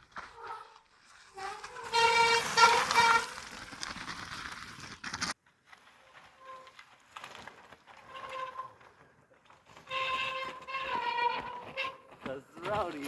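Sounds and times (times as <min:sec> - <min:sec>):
rushing trail noise: 0:00.0 - 0:13.0
bike disc brakes squealing: 0:01.4 - 0:03.7, 0:08.0 - 0:08.8, 0:09.8 - 0:12.1.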